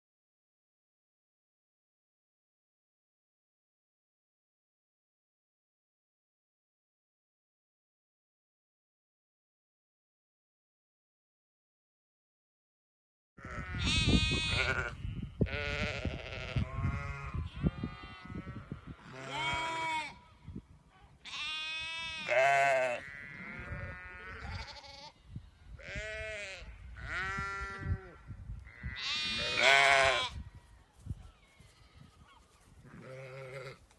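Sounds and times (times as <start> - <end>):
sheep bleating: 13.4 - 20.4, 21.2 - 25.2, 25.8 - 30.4, 31.6 - 33.8.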